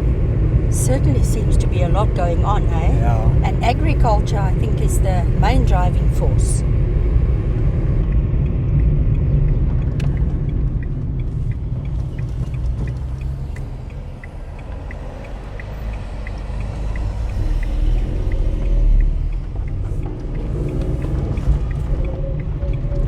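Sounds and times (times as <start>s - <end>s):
car road and engine drone: 0.0s - 23.0s
faint regular ticking: 7.4s - 23.0s.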